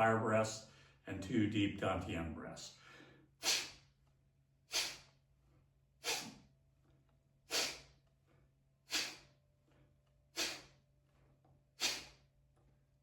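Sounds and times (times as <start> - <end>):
sharp nasal exhalations: 2.8 - 3.9, 4.7 - 5.2, 6.0 - 6.5, 7.5 - 8.0, 8.9 - 9.4, 10.3 - 10.8, 11.8 - 12.3.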